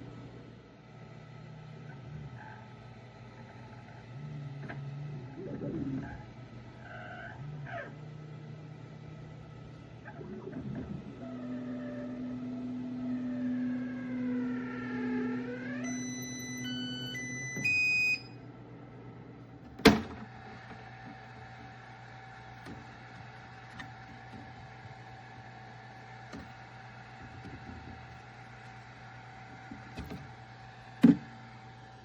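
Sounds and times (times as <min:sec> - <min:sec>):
faint steady hum: 0:00.0 - 0:32.0
stepper motors humming and whining: 0:03.6 - 0:18.3, 0:19.7 - 0:31.2
electronic beeps: 0:15.8 - 0:18.4.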